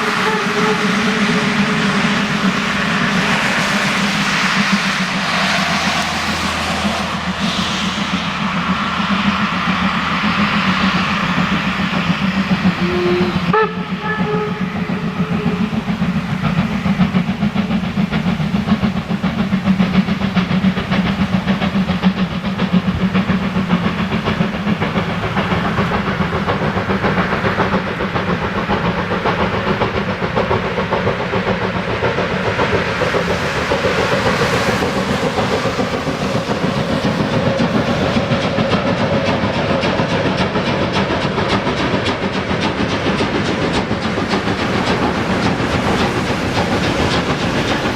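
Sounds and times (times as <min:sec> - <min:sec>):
locomotive whistle: 0:00.0 - 0:01.9, 0:12.8 - 0:15.9
steam hissing: 0:00.0 - 0:47.9
steam locomotive exhaust beats: 0:00.0 - 0:47.9
wheels clattering on rails: 0:00.0 - 0:47.9.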